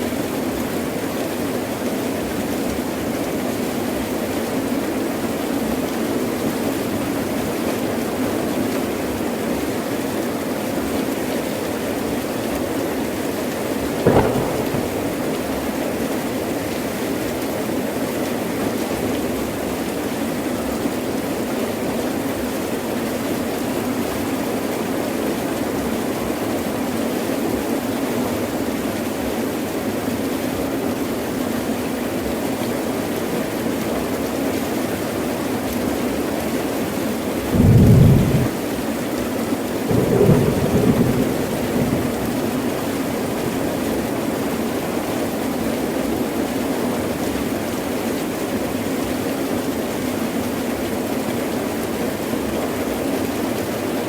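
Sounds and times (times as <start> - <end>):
heavy rain falling: 0.0 - 21.9, 32.9 - 54.0
sharp crack: 14.0 - 16.1.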